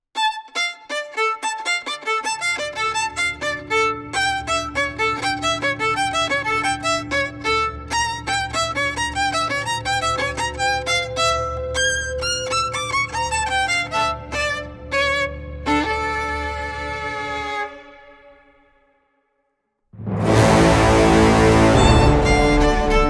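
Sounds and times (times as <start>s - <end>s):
detached violin melody: 0.1s - 18.8s, 20.0s - 23.0s
low bass: 20.0s - 23.0s.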